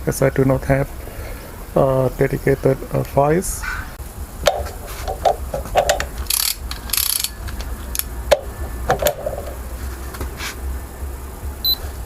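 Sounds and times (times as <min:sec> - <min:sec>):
wrench clicking on metal: 0:05.9 - 0:07.4
wrench ratcheting: 0:05.9 - 0:07.4.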